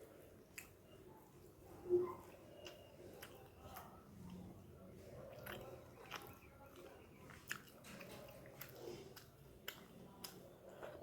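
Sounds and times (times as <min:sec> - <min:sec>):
person chewing food: 0:00.0 - 0:11.0
mouth clicks and smacks: 0:05.2 - 0:11.0.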